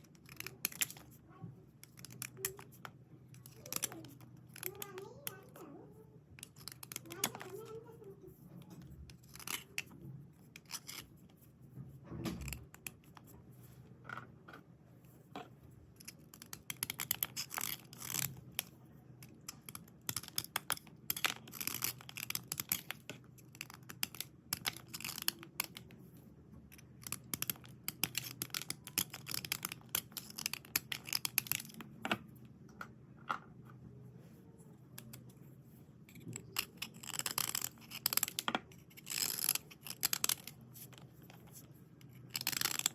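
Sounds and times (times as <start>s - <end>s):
slate pencils scraping: 6.4s - 11.4s, 36.1s - 42.9s.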